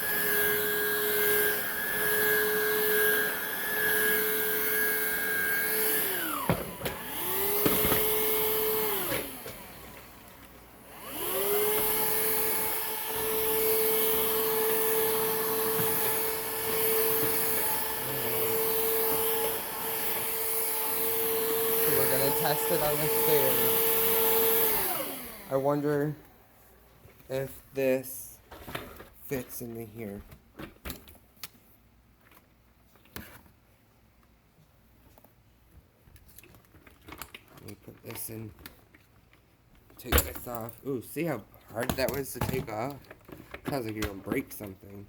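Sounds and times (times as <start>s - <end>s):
cordless vacuum motor whining: 0.0s - 26.3s.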